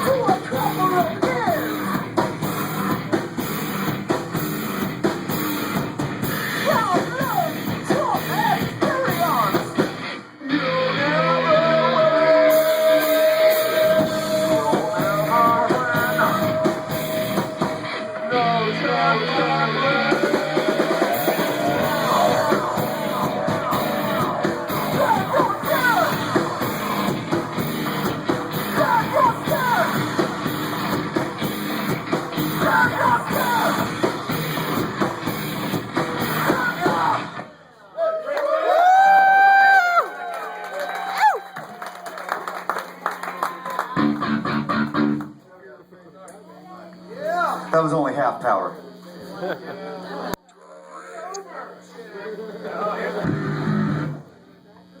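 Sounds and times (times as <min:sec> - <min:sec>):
distorted electric guitars: 0:00.0 - 0:37.6, 0:43.8 - 0:45.4, 0:53.0 - 0:54.4
drums: 0:00.0 - 0:37.6, 0:41.1 - 0:45.5, 0:53.1 - 0:54.4
person singing: 0:10.4 - 0:30.3, 0:32.4 - 0:34.1.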